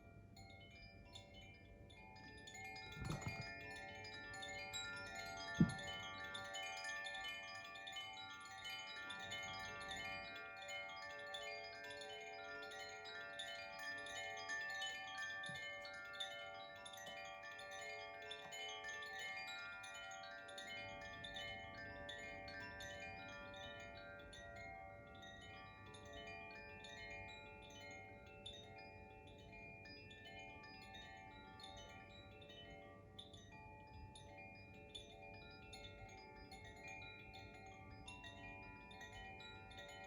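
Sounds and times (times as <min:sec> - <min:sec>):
chimes ringing: 0:02.6 - 0:06.8.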